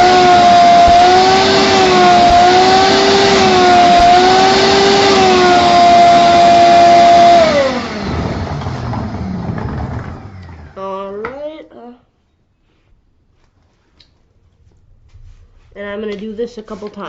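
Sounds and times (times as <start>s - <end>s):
shop vac sucking water: 0.0s - 10.8s.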